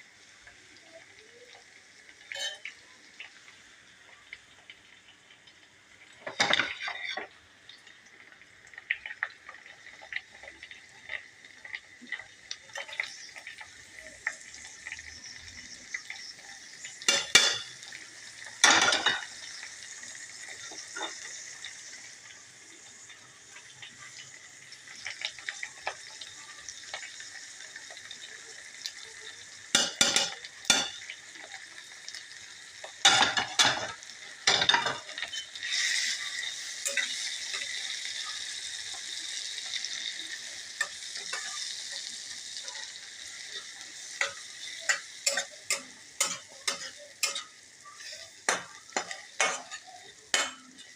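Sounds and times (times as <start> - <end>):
food sizzling in a frying pan: 0.0 - 50.9
metal spoon scraping a pan: 2.3 - 2.7, 6.3 - 7.3, 33.0 - 37.8, 44.0 - 50.9.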